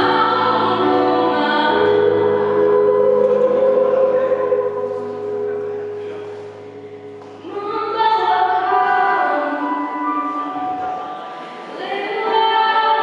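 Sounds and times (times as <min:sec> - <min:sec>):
choir of young voices singing: 0:00.0 - 0:05.3.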